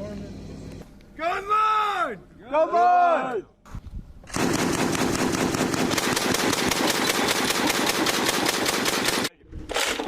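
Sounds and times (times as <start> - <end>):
machine gun firing: 4.3 - 10.0.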